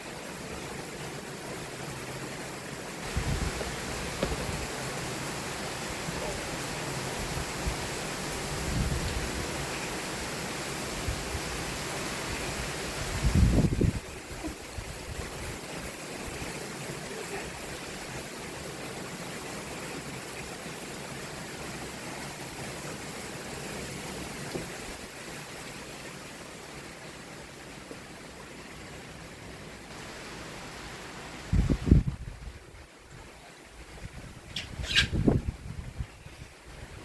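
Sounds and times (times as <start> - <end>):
heavy rain hissing: 0.0 - 37.0
brief low thump: 3.6 - 4.5.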